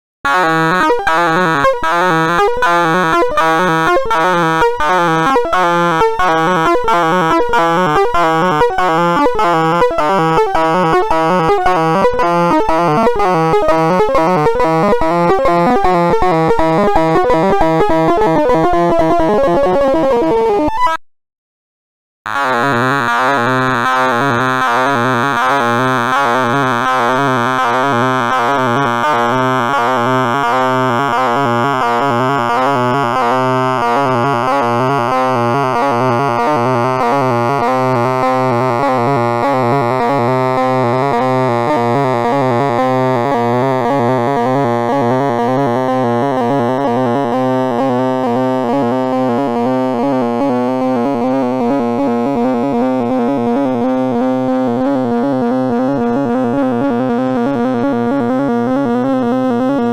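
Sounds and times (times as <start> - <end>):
short synthesized tones: 0.3 - 21.0.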